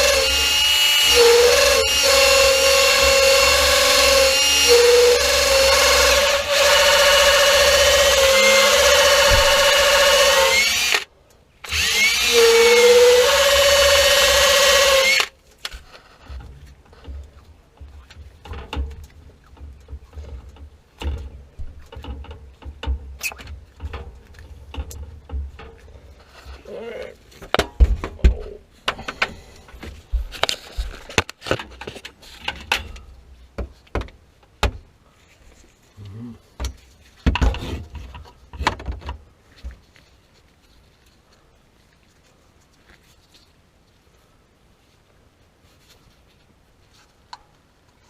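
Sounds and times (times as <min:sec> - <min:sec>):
tools and parts knocking and rattling: 0:15.7 - 0:26.6, 0:27.4 - 0:34.9, 0:36.6 - 0:39.8.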